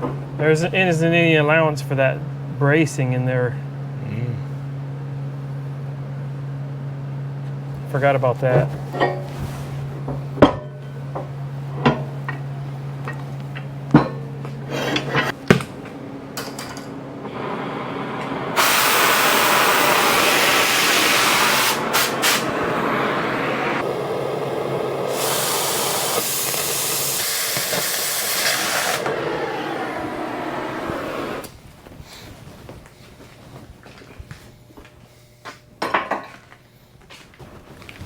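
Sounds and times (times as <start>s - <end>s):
cutting torch hissing: 17.3s - 31.5s.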